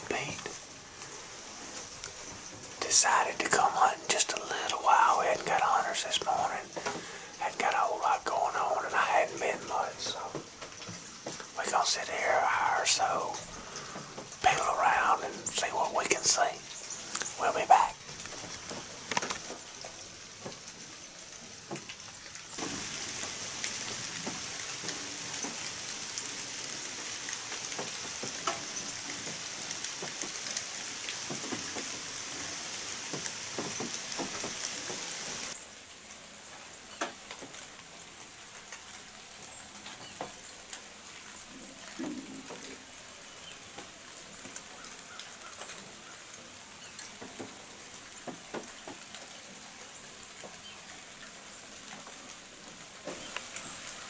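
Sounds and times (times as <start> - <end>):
rain hissing and dripping: 0.0 - 54.0.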